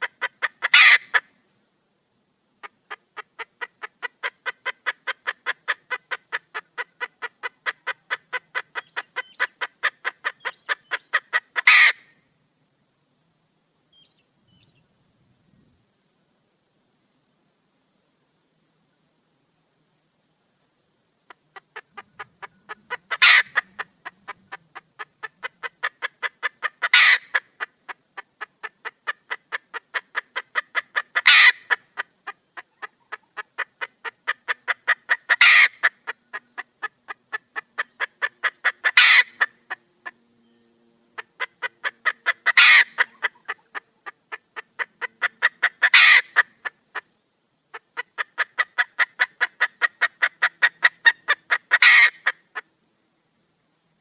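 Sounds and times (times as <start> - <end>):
hen clucking and squawking: 0.0 - 1.4, 2.6 - 12.2, 21.3 - 40.3, 41.1 - 52.8.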